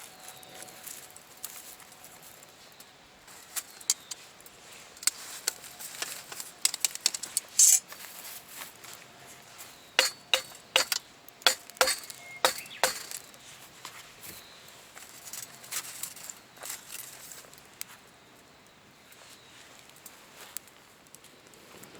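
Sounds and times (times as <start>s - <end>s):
metal objects clinking: 3.9s - 4.2s, 5.9s - 7.9s, 10.0s - 13.2s
metal scrape: 7.1s - 7.9s, 10.0s - 13.2s.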